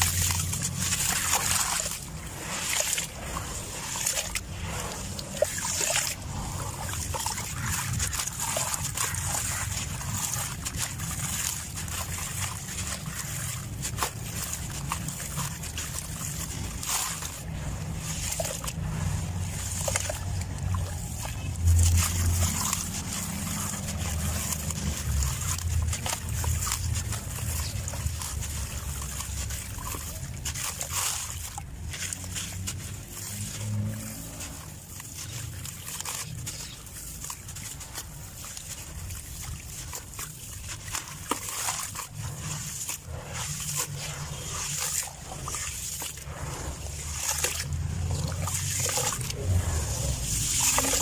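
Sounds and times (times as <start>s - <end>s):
sand clumps crumbling: 30.2s - 51.0s
low rumble: 46.2s - 51.0s.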